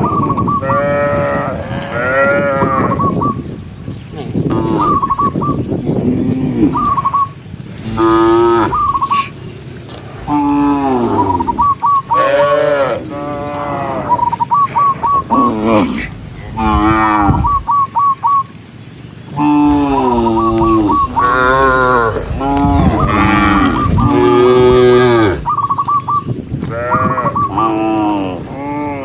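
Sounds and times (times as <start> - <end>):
cattle mooing: 7.8 - 17.7, 19.4 - 25.6.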